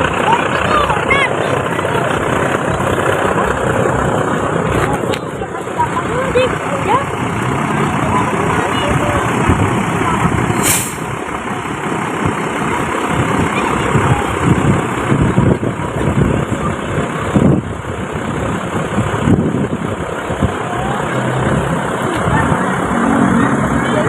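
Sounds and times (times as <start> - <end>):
bus engine running: 0.0 - 24.0
sharp hiss of air: 10.6 - 11.1.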